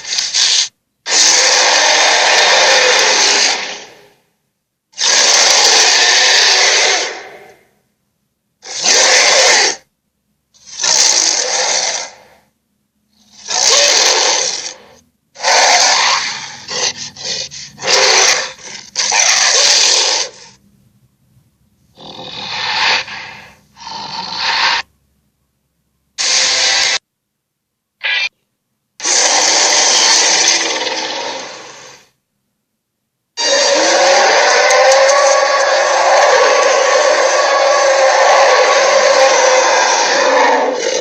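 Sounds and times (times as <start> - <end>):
raspy sea monster sound effects: 33.4 - 41.0.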